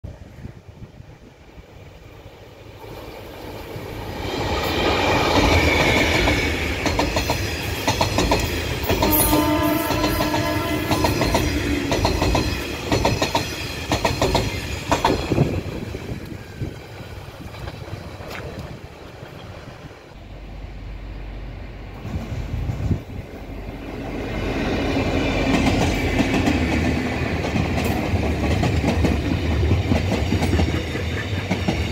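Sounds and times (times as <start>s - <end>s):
train passing: 0.0s - 31.9s
train horn: 8.8s - 12.2s.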